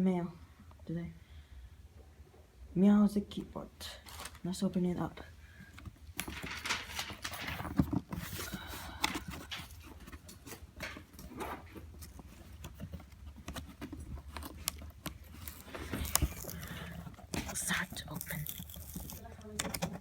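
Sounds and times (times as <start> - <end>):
package being opened by hand: 4.0 - 4.4, 6.2 - 20.0
packaging rustling and scraping: 4.0 - 4.5, 5.5 - 20.0.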